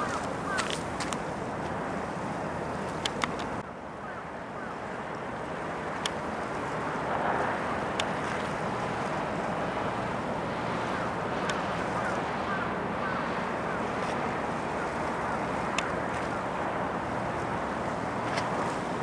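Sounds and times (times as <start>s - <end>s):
water washing at shore: 6.1s - 19.0s.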